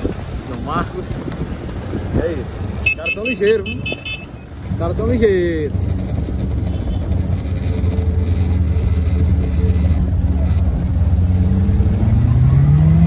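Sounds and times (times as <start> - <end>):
vehicle engine running: 3.9 - 12.8.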